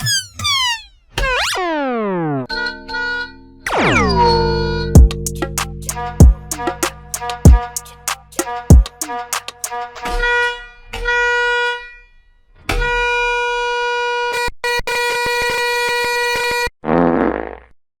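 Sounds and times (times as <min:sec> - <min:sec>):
bus horn blasts: 0:05.9 - 0:11.8.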